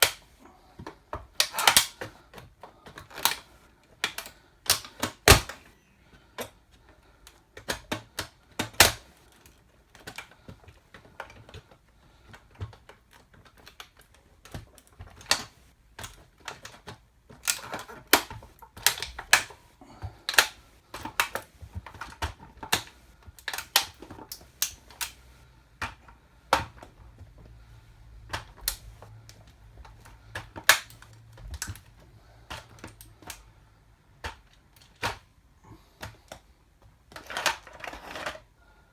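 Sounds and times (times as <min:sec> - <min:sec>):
toy car cracking under heels: 0:00.0 - 0:05.7, 0:07.6 - 0:27.3, 0:28.1 - 0:33.4.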